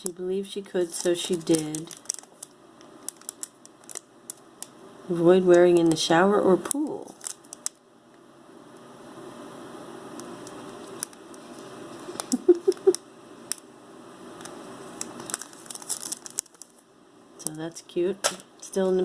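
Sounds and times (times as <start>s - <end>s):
plastic packaging crinkling: 0.7s - 4.7s, 6.6s - 7.8s, 14.4s - 16.9s.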